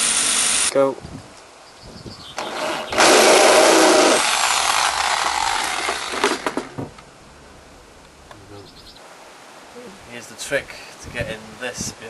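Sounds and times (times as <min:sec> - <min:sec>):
electric drill cutting sheet metal: 0:00.0 - 0:00.7, 0:02.4 - 0:06.7
drill clicks: 0:02.4 - 0:07.1.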